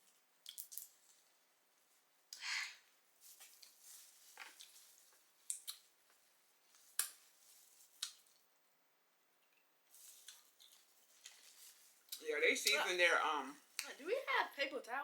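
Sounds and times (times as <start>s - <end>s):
wet squishing of shells in sauce: 0.1s - 1.3s, 9.4s - 12.2s.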